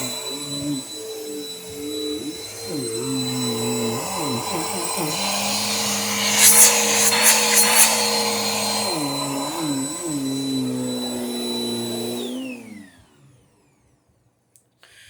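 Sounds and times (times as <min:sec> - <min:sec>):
motor winding down: 0:00.0 - 0:13.4
upright vacuum whining: 0:00.0 - 0:14.0.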